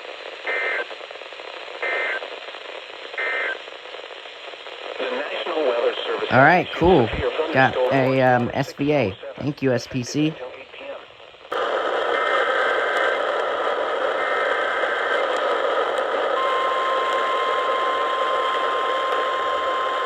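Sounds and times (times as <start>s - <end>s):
heavy static hiss: 0.0s - 16.4s
steady single-pitch alarm tone: 16.3s - 20.0s.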